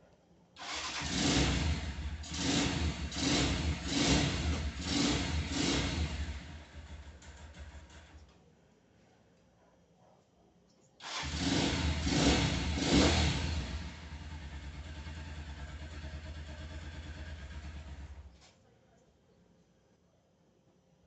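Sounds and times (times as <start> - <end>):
motorcycle engine revving and idling: 0.6 - 8.3, 11.0 - 18.4.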